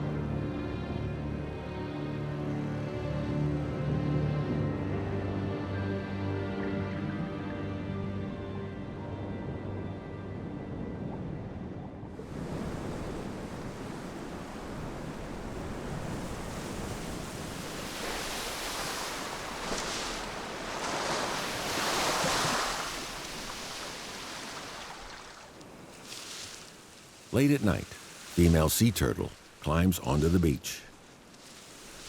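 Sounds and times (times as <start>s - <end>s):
ocean waves washing in: 10.7s - 32.0s.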